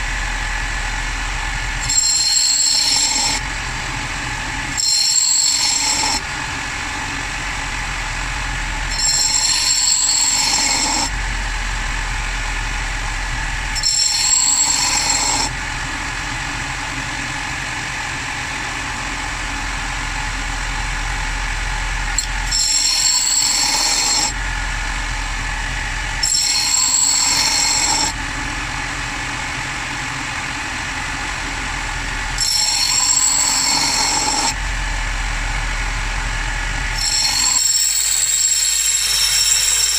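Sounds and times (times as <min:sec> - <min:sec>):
electric grinder running: 0:08.9 - 0:11.1, 0:13.8 - 0:15.5, 0:22.2 - 0:24.4, 0:26.2 - 0:28.2, 0:32.2 - 0:34.6, 0:36.9 - 0:39.9
metal grinding hiss: 0:08.9 - 0:11.1, 0:13.8 - 0:15.5, 0:22.2 - 0:24.4, 0:26.2 - 0:28.2, 0:32.4 - 0:34.6, 0:37.0 - 0:39.9.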